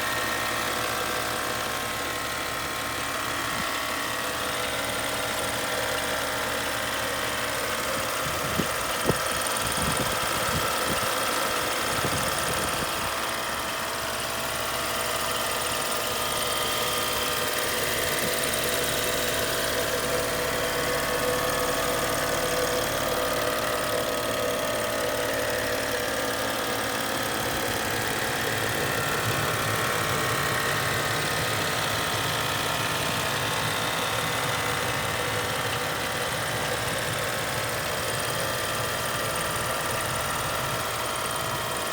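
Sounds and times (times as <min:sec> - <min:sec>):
car engine idling: 0:00.0 - 0:41.9
hum and buzz under hood: 0:00.0 - 0:41.9.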